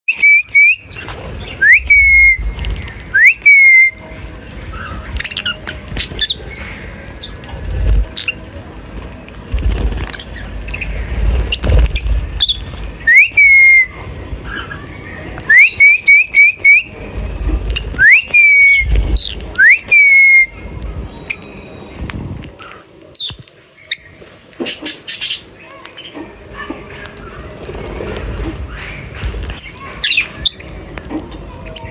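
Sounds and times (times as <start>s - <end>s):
birds whistled calls: 0.1s - 8.5s, 9.4s - 26.2s, 26.8s - 31.9s
low rumbling: 0.4s - 22.6s.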